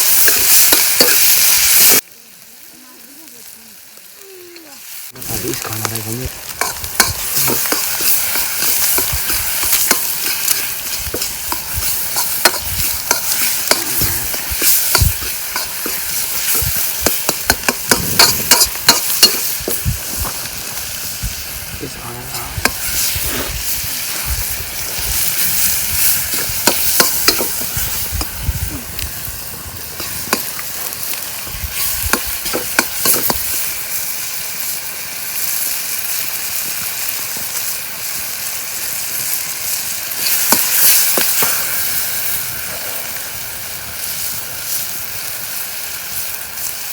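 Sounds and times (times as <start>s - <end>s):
food sizzling in a pot: 0.0s - 46.9s
spoon scraping a pot: 6.6s - 19.9s.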